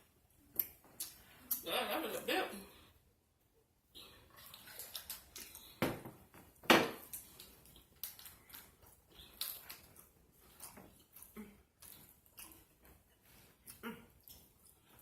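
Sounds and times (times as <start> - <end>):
wet chewing and lip smacking: 0.4 - 1.6, 4.1 - 5.8, 7.0 - 15.0.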